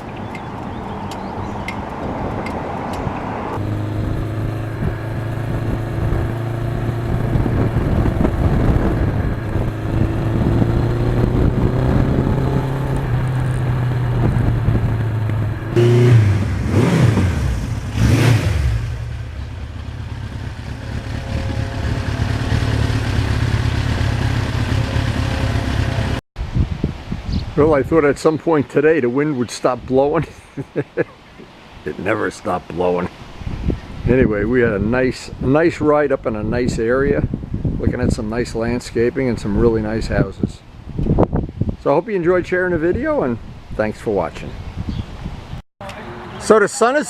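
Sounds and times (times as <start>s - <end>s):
wind noise on microphone: 0.0s - 18.4s, 26.4s - 28.2s, 33.1s - 45.6s
motorcycle engine running: 3.6s - 26.2s.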